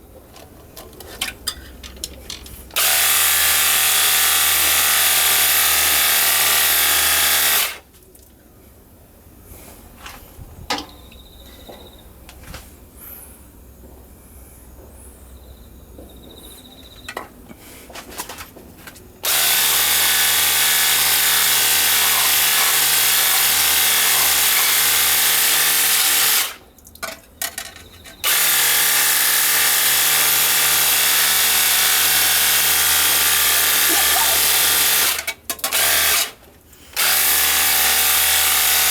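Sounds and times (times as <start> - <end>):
pressure washer motor whine: 19.2 - 26.6.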